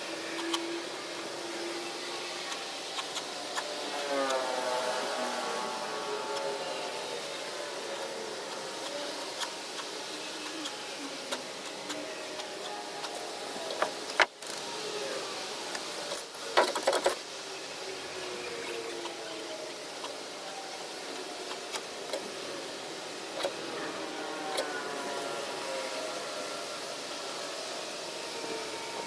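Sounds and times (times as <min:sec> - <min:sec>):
small motor whirring: 0:00.0 - 0:15.0.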